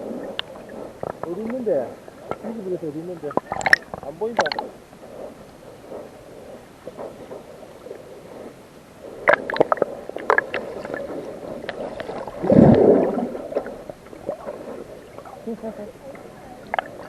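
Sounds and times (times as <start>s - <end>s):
muffled gurgling rush of water: 0.0s - 17.0s
sea water splashing: 0.0s - 17.0s.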